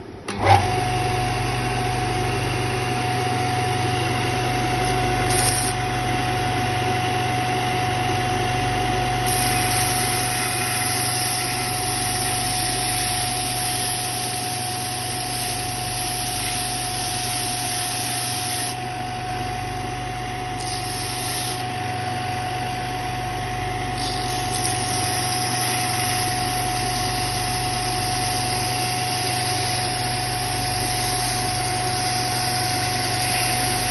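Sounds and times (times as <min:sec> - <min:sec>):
sander motor humming: 0:23.7 - 0:33.9.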